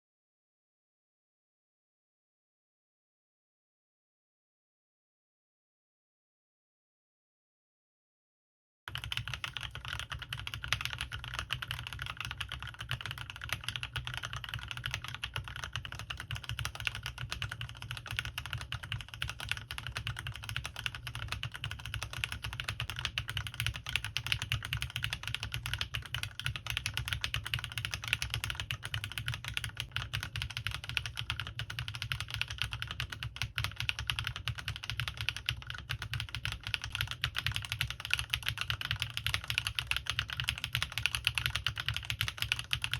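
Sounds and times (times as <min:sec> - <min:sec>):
mechanical keyboard typing: 0:08.9 - 0:42.9.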